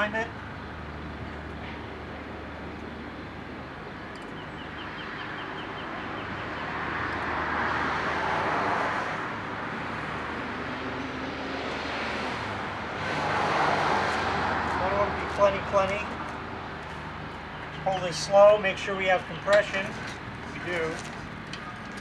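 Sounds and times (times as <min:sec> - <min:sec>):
passing vehicle: 0:04.6 - 0:22.0.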